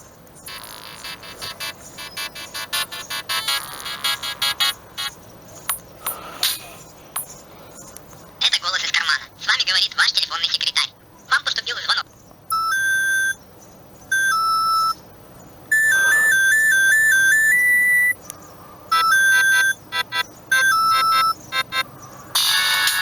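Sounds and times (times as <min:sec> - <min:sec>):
mobile phone alert beeps: 0:00.5 - 0:05.1, 0:12.5 - 0:13.4, 0:14.1 - 0:15.0, 0:15.7 - 0:18.2, 0:18.9 - 0:23.0
warbling trill: 0:00.5 - 0:05.1.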